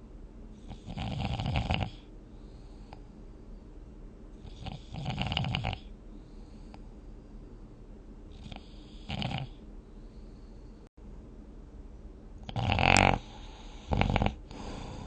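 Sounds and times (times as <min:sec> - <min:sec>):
person snoring: 0:00.7 - 0:02.1, 0:04.4 - 0:05.9, 0:08.4 - 0:09.6, 0:12.5 - 0:15.0.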